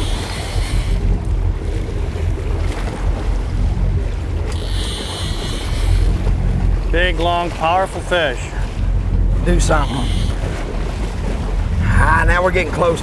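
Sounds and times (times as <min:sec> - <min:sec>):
wind on microphone: 0:00.0 - 0:07.1
boat engine rumbling: 0:00.0 - 0:13.0
water noise: 0:00.0 - 0:13.0.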